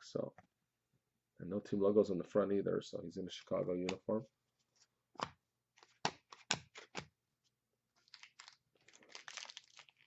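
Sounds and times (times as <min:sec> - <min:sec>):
foil wrapper crinkling: 0:08.0 - 0:10.0.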